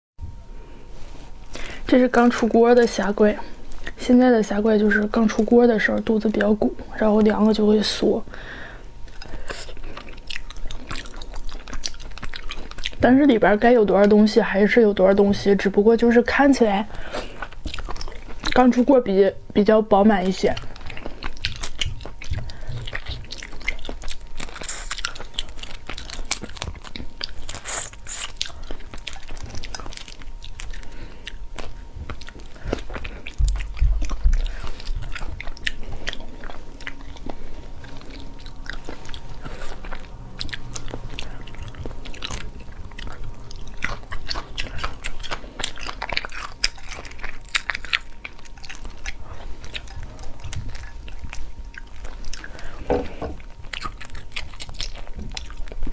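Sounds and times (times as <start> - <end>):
person chewing crunchy shrimp: 3.0 - 4.0, 8.3 - 13.0, 16.7 - 18.7, 20.2 - 55.9.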